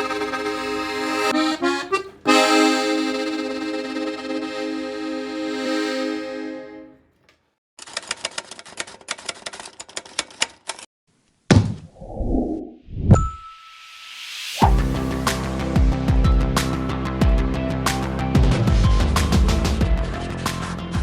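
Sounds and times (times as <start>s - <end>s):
accordion chord: 0.0s - 7.1s.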